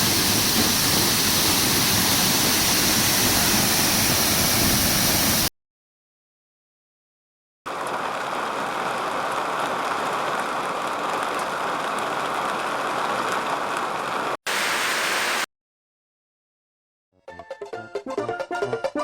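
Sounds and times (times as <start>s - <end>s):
falling water rushing: 0.0s - 5.5s, 7.7s - 15.5s.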